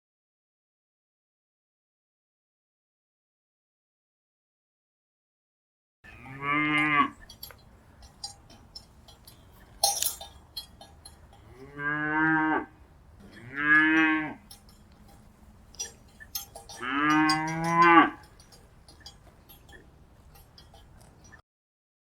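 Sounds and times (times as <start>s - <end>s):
cattle mooing: 6.1s - 7.5s, 11.0s - 20.8s
light clinks: 6.2s - 11.8s, 12.8s - 21.4s
sharp metal clank: 7.2s - 11.7s, 13.2s - 19.8s.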